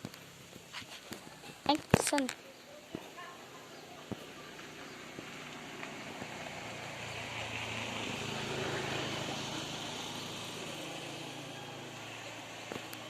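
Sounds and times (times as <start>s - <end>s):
vehicle engine passing by: 3.1s - 13.0s.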